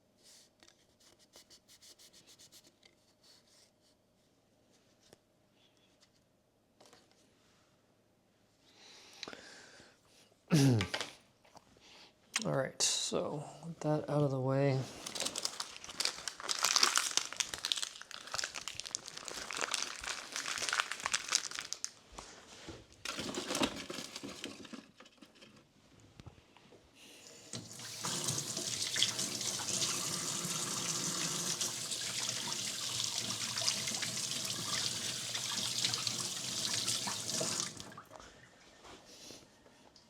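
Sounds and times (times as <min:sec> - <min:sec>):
crinkling and rustling: 0:14.8 - 0:26.8
tap water running into sink: 0:27.6 - 0:38.1.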